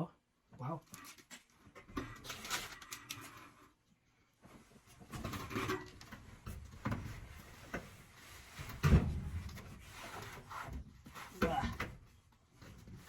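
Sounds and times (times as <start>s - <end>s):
clunks and rubbing in metal cabinet: 8.5s - 11.6s.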